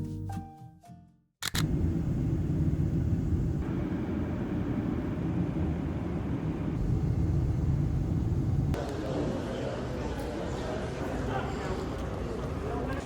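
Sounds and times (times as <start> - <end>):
airliner cabin rumble: 1.6 - 8.8.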